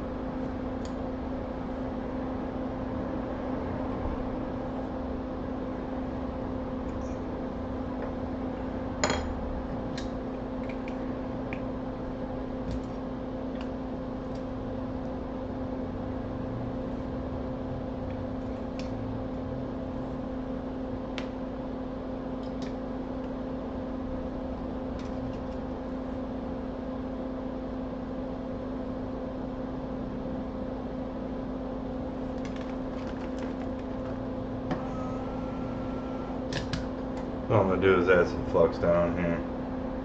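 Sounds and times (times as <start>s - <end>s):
small fan motor humming: 31.6s - 40.0s.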